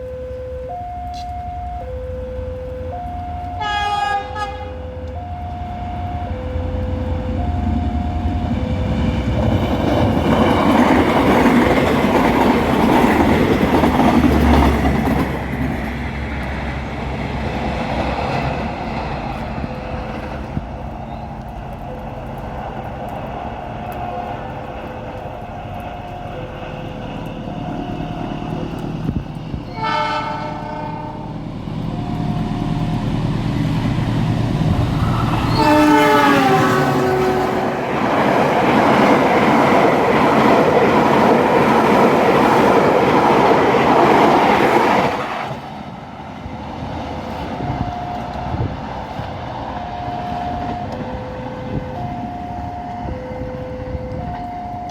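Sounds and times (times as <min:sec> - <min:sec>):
two-tone crossing alarm: 0:00.0 - 0:15.3, 0:19.0 - 0:45.3, 0:47.2 - 0:54.9
train rolling: 0:00.0 - 0:54.9
train horn: 0:02.7 - 0:06.0, 0:29.6 - 0:31.4, 0:35.0 - 0:38.1.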